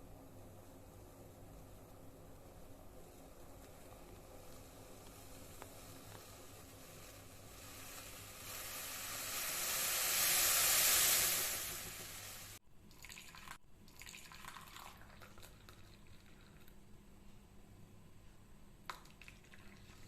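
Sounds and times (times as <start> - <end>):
faint crackling: 0.4 - 12.6
liquid pouring and splashing: 3.6 - 16.7, 18.9 - 20.0.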